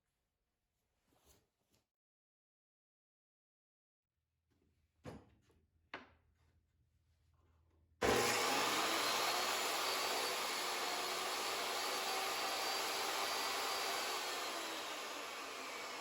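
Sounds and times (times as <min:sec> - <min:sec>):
table saw motor running: 0:08.0 - 0:16.0.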